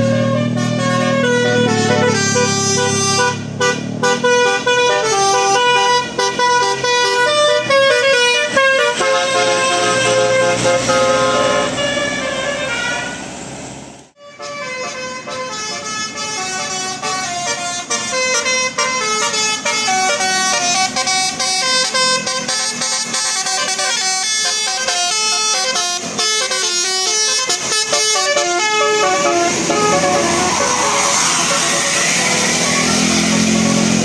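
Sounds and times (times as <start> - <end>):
air horns playing a tune: 0.0 - 13.2, 14.2 - 34.0.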